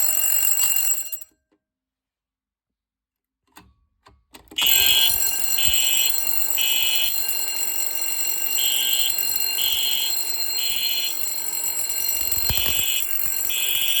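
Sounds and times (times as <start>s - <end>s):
fire alarm beeps: 4.6s - 14.0s
steady high-pitched tone: 8.6s - 14.0s.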